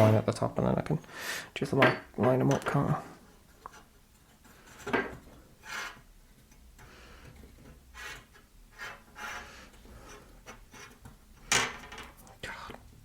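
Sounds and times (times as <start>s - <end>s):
pencil scratching on wood: 5.6s - 6.1s, 7.6s - 11.1s.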